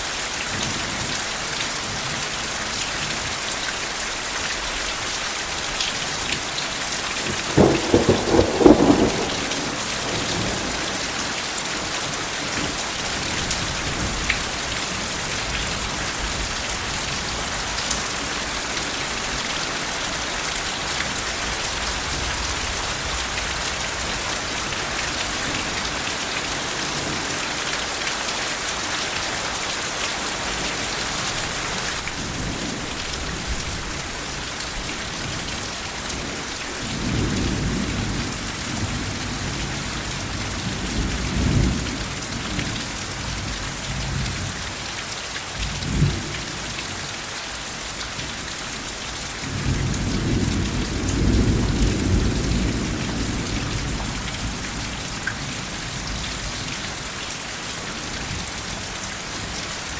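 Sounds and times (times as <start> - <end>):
steady rain falling: 0.0 - 59.9
soft thunder rumbling: 7.3 - 11.4.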